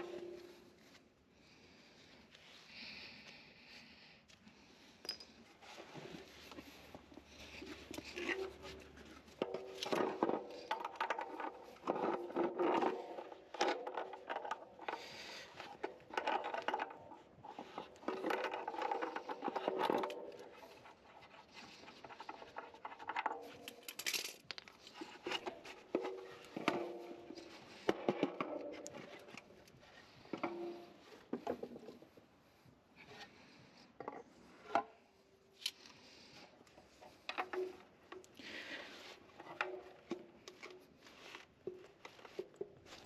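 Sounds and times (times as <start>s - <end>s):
scraping and rubbing of parts: 5.1s - 32.1s
metal parts ringing: 23.6s - 24.6s.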